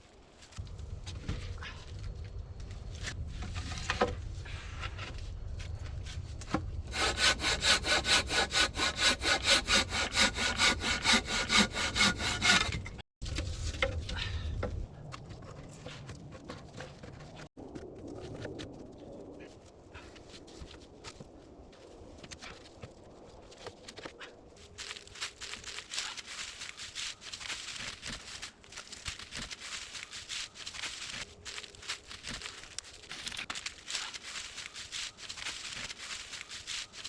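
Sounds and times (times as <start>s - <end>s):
hand saw cutting wood: 6.9s - 13.0s.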